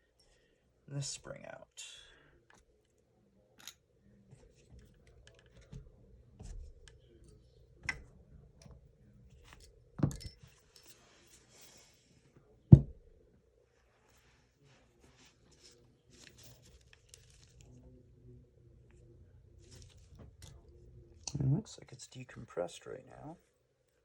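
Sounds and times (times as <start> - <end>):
small clicks of parts handled: 3.6 - 3.8, 4.6 - 5.8.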